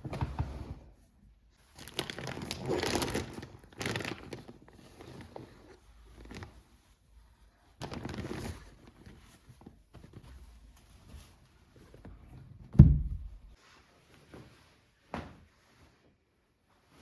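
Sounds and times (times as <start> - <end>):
heavy thump: 12.7 - 13.5.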